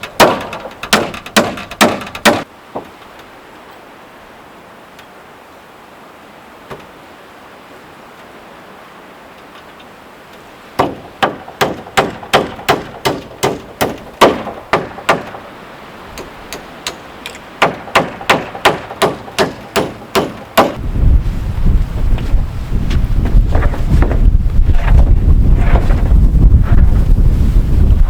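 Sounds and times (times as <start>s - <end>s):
hammer driving nails into wood: 0.0s - 2.5s, 10.8s - 15.4s, 16.2s - 20.8s
wind buffeting microphone: 20.7s - 28.0s.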